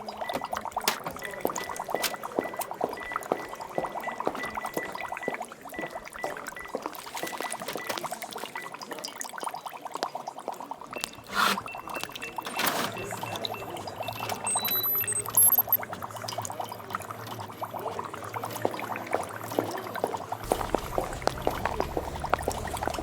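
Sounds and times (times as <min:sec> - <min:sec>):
liquid bubbling and pouring: 0:00.0 - 0:12.2, 0:13.8 - 0:23.0
thin high electronic tone: 0:11.1 - 0:15.8.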